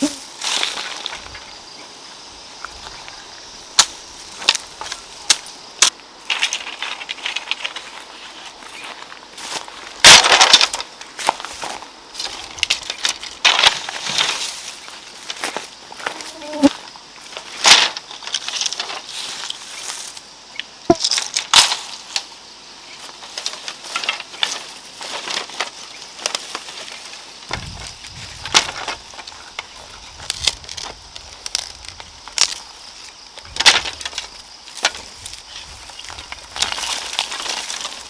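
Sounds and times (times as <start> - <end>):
insects buzzing: 0.0 - 38.0
crisp snaps and rustles: 27.5 - 32.7.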